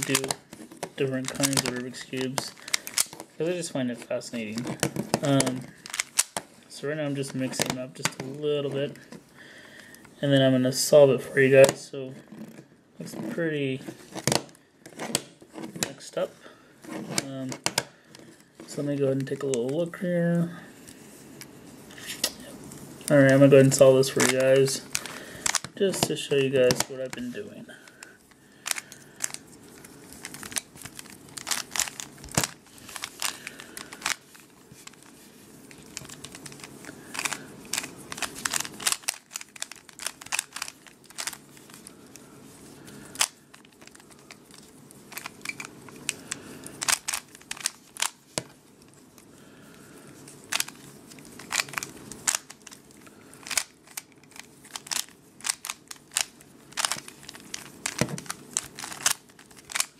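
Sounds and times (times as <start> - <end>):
puzzle cube clicking: 0.0 - 3.4, 4.6 - 6.5, 23.3 - 26.1, 28.6 - 42.0, 43.0 - 48.5, 50.4 - 52.8, 53.4 - 59.9.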